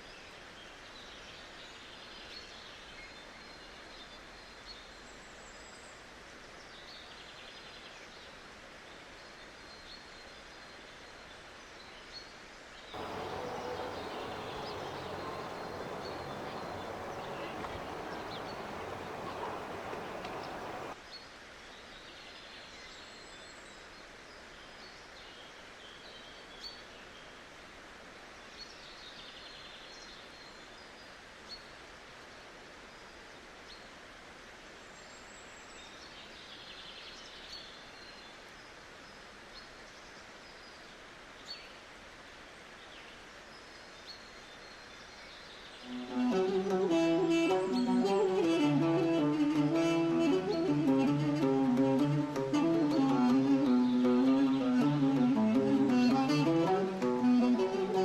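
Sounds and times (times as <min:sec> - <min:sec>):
faint bird chirps: 0:13.0 - 0:21.0
faint hiss: 0:13.0 - 0:21.0
light ticks: 0:13.0 - 0:21.0.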